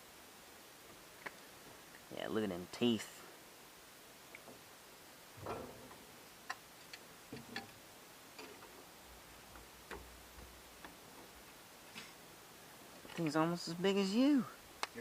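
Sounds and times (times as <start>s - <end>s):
faint background hiss: 0.0s - 15.0s
light clicks and taps: 0.9s - 2.1s.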